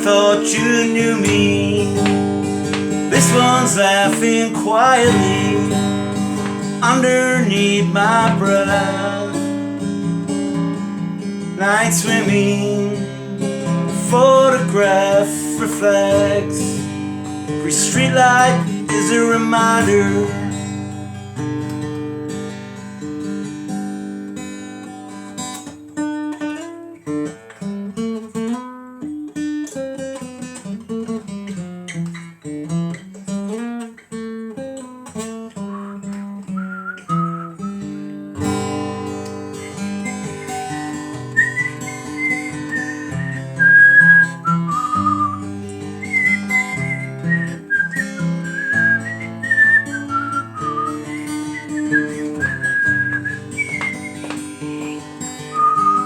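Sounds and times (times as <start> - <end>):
acoustic guitar picking and strumming: 0.0 - 56.0
person whistling a melody: 2.8 - 6.2, 17.7 - 20.4, 35.6 - 38.0, 39.7 - 56.0.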